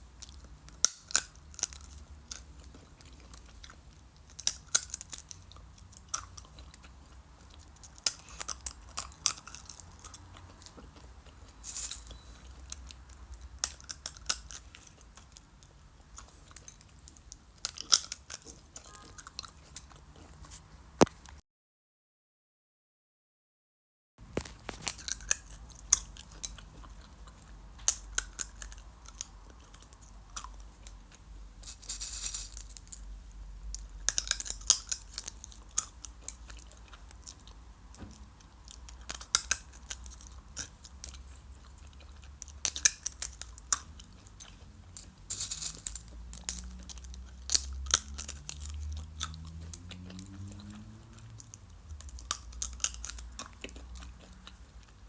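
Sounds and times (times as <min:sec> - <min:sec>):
seeds cracking between teeth: 0:31.6 - 0:54.5.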